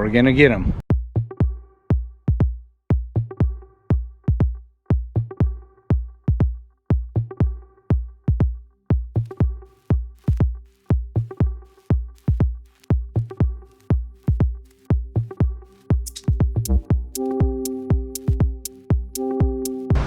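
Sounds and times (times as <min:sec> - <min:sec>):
deep kick-drum beat: 0:00.9 - 0:20.0
sustained synth tones: 0:14.7 - 0:20.0.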